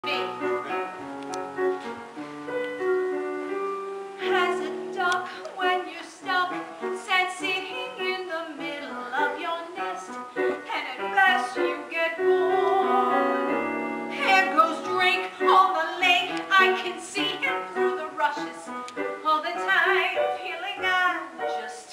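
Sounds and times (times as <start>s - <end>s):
person singing with vibrato: 0.0s - 0.8s, 4.2s - 21.9s
piano chords: 0.0s - 21.9s.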